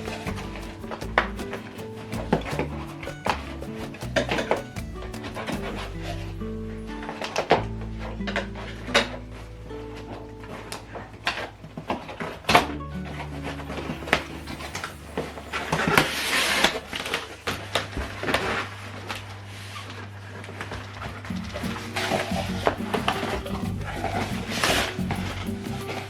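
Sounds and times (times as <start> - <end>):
background music with low bass: 0.0 - 16.8, 21.4 - 26.0.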